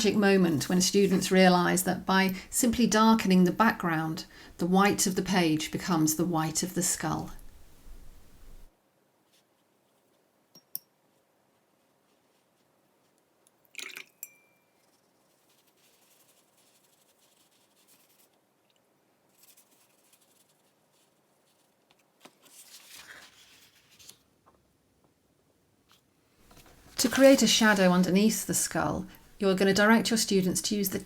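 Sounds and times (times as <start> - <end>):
brush strokes on paper: 0.0 - 2.5, 11.0 - 13.2, 14.8 - 18.4, 19.3 - 24.1, 26.5 - 31.0
paintbrush clinking glass jar: 13.8 - 14.9.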